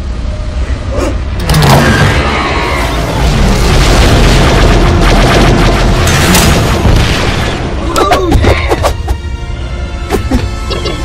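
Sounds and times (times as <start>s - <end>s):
explosion rumble with crackling: 1.5s - 8.8s.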